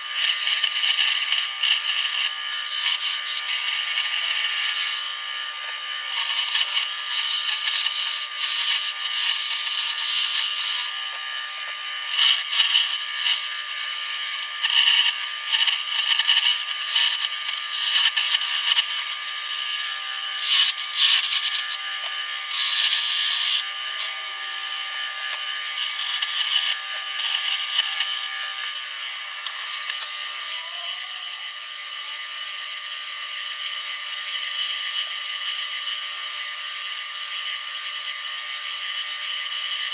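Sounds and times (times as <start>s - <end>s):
tool scraping spinning wood: 0.0s - 31.0s
wood lathe motor: 0.0s - 39.9s.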